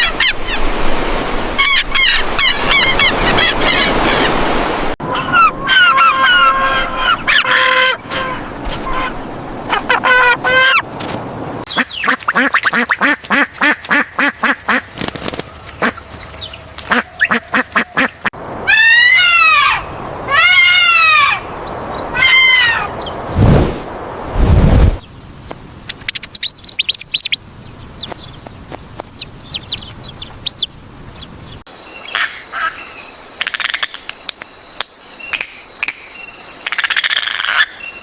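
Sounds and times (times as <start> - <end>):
birds honking and quacking: 5.0 - 10.8, 11.7 - 23.1
bird calls: 11.7 - 23.4, 25.0 - 38.0.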